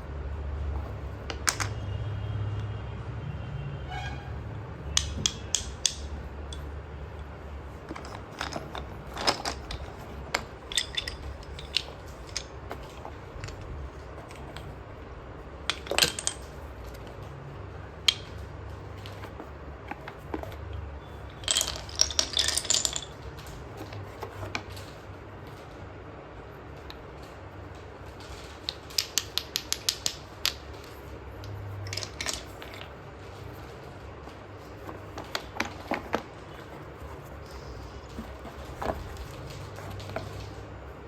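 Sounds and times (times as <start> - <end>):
slate pencils crunching: 5.0 - 25.0, 28.2 - 40.6.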